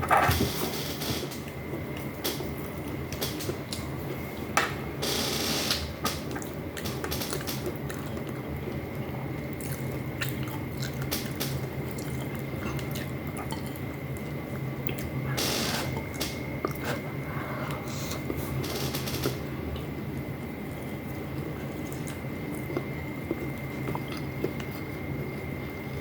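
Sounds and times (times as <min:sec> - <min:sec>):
steady background hum: 0:00.0 - 0:26.0
chewing and wet mouth sounds: 0:06.1 - 0:26.0.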